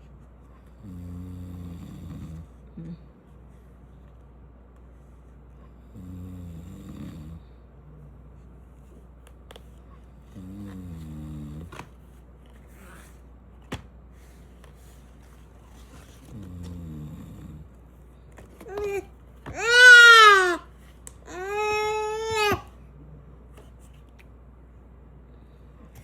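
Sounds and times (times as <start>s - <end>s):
man snoring: 0.8s - 2.5s, 5.9s - 7.5s, 10.4s - 11.7s.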